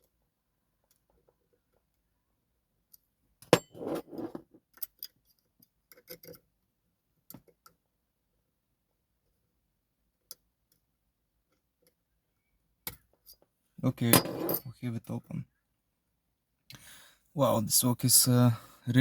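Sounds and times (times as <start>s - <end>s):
metal clicks of lock picking: 5.9s - 6.4s.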